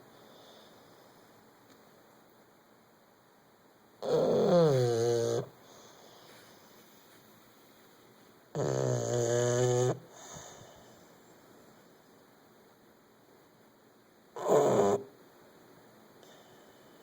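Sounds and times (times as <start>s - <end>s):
dog snoring: 4.0s - 6.0s, 8.5s - 10.8s, 14.4s - 15.1s.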